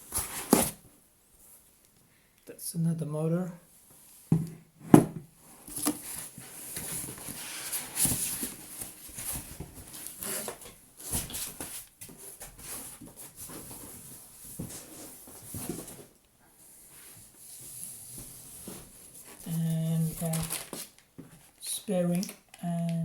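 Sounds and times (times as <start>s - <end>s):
packing material rustling: 18.2s - 21.1s.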